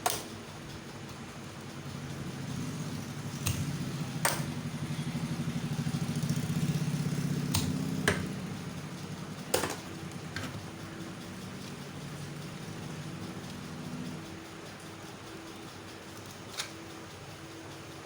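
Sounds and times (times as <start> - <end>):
low pulsing motor hum: 0.0 - 16.2
sharp clicks: 3.4 - 4.6, 7.4 - 8.3.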